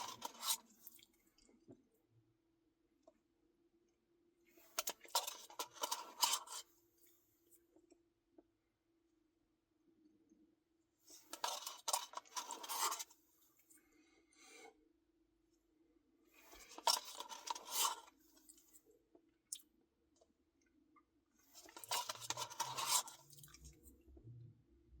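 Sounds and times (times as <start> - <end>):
spoon scraping: 0.0 - 0.7, 11.1 - 13.1, 16.5 - 18.2, 21.6 - 23.8.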